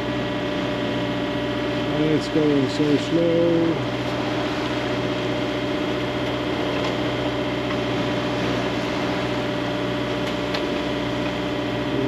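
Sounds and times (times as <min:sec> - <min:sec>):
boat engine droning: 0:00.0 - 0:12.0.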